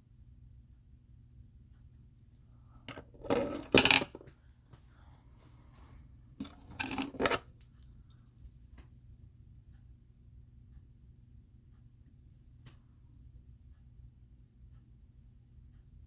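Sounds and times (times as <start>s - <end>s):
makeup items clattering and clicking: 2.9s - 4.3s, 6.4s - 7.5s.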